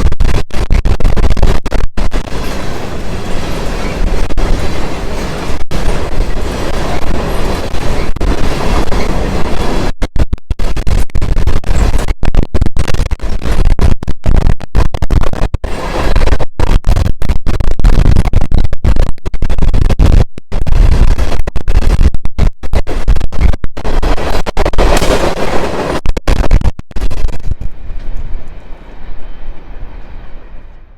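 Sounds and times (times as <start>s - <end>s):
train cars rumbling past: 27.7s - 30.9s.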